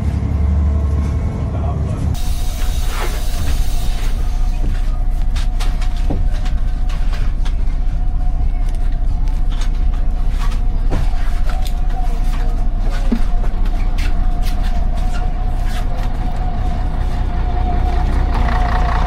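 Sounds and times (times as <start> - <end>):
motor rumble and hum: 4.0 - 19.0.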